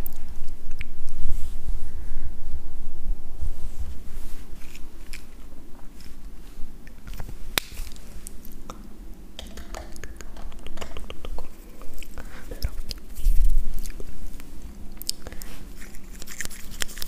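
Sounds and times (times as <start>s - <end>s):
soft rubbing: 1.1s - 2.0s, 3.3s - 8.4s, 9.6s - 17.0s.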